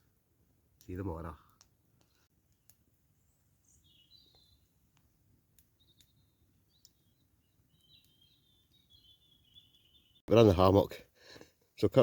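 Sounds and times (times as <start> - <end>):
faint high bird chirps: 3.1 - 4.8, 5.7 - 10.2.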